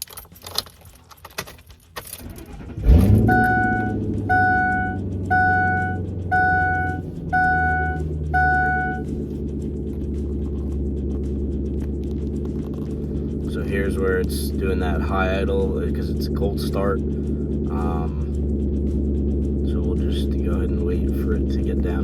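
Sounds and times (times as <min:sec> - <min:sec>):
keys rattling in ignition: 0:00.0 - 0:22.0
truck engine starting and idling: 0:00.0 - 0:22.0
warning chime beeping: 0:02.8 - 0:09.2.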